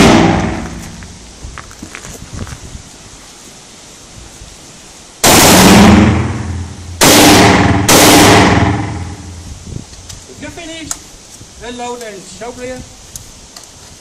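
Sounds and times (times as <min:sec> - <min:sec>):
rifle shots with echo: 0:00.0 - 0:00.8, 0:05.2 - 0:09.4.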